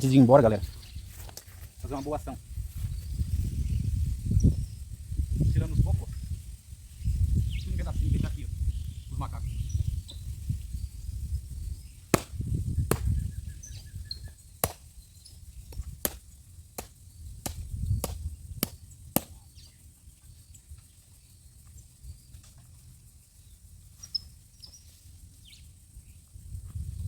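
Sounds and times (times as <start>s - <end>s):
blows breaking a coconut: 12.1s - 13.2s.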